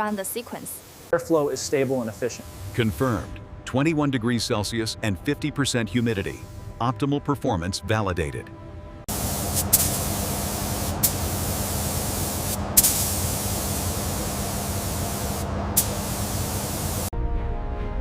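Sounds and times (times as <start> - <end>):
spraying hiss: 0.0 - 3.4, 9.1 - 17.1.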